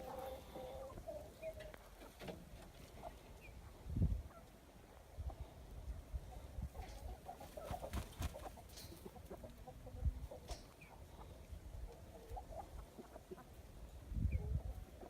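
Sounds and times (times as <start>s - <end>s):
chickens clucking softly: 0.0s - 15.0s.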